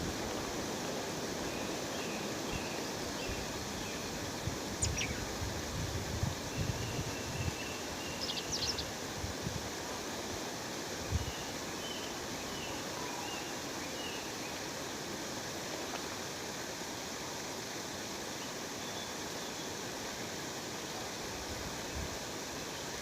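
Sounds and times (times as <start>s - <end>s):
faint bird chirps: 4.8s - 5.3s, 6.6s - 8.9s.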